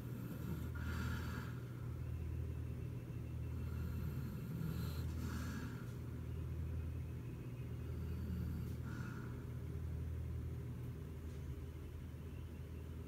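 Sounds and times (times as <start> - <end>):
pet snoring: 0.0 - 1.6, 3.5 - 5.8, 7.8 - 9.2.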